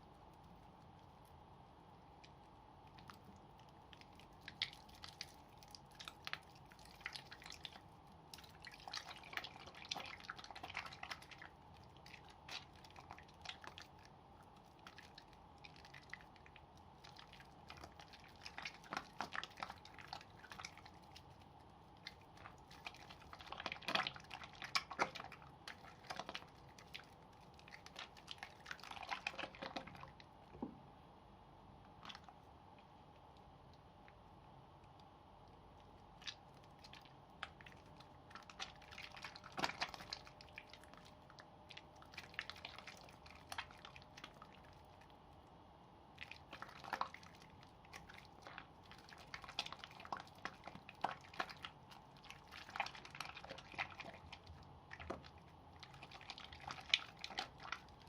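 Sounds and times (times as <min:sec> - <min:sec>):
soap squishing in hands: 0:00.0 - 0:30.6, 0:31.8 - 0:58.0.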